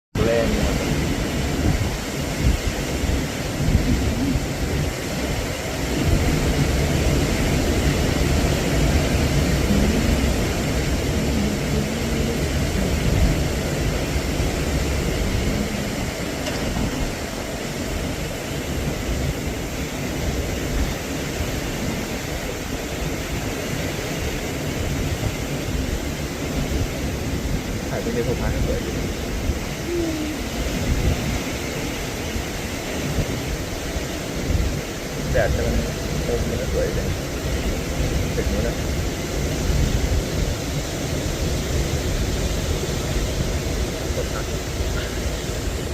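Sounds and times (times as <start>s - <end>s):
gusty wind buffeting microphone: 0.2s - 45.9s.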